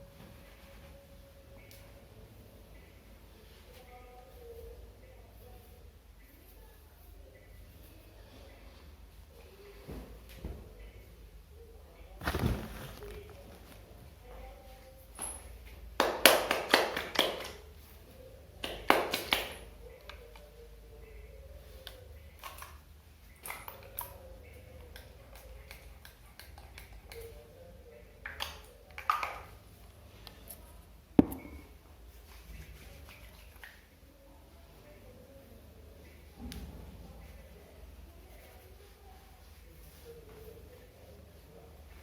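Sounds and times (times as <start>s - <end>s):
wet hair rustling: 12.2s - 14.0s.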